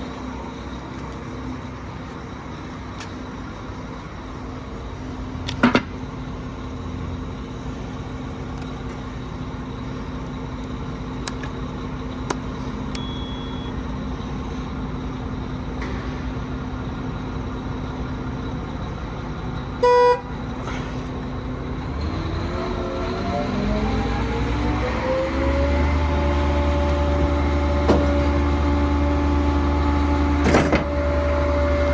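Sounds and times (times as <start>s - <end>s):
diesel truck engine running: 0.0s - 31.9s
loud horn blast: 19.8s - 20.4s.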